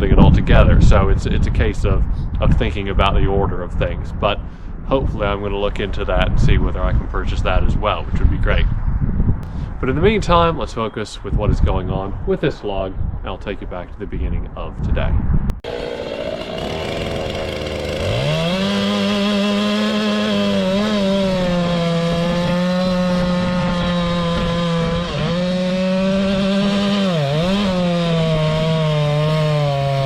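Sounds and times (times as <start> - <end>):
chainsaw cutting wood: 15.6 - 30.0.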